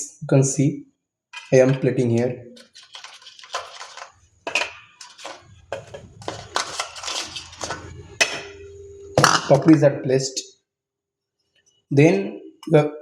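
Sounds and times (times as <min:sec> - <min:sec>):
crisp wafers crunching: 0:02.6 - 0:04.2.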